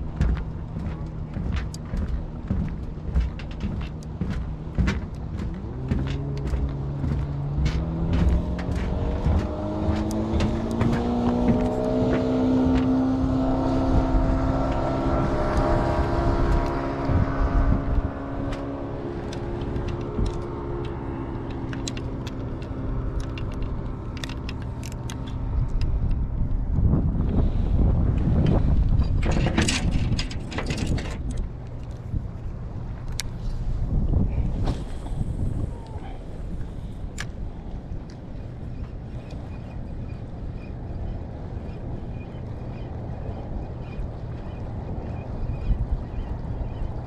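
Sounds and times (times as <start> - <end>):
engine running: 0.0 - 26.4
low wind rumble: 0.0 - 47.0.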